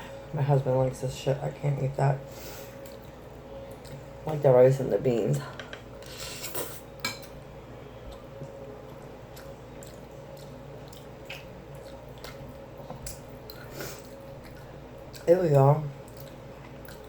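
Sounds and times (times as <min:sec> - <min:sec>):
steady low hum: 0:00.0 - 0:17.0
person chewing food: 0:08.0 - 0:15.3, 0:16.0 - 0:17.0.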